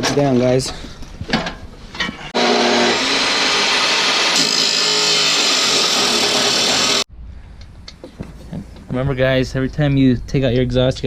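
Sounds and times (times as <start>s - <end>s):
power tool running: 2.4s - 7.1s.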